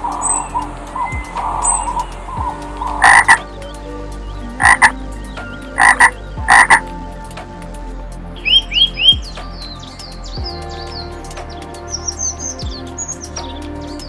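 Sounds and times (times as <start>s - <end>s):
frog croaking: 1.4s - 3.6s, 4.6s - 5.0s, 5.8s - 6.9s.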